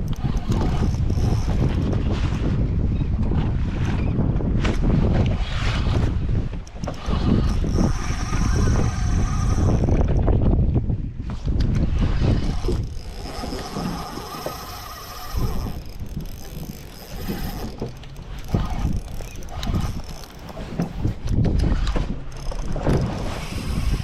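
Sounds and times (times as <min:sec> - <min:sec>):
thin mechanical whir: 0:00.0 - 0:01.8, 0:06.8 - 0:10.2, 0:11.8 - 0:24.0
wind buffeting microphone: 0:00.0 - 0:24.0.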